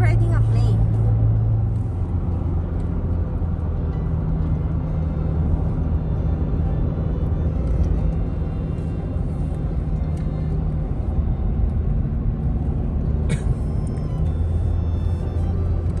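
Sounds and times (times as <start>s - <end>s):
car engine drone and road noise: 0.0s - 16.0s.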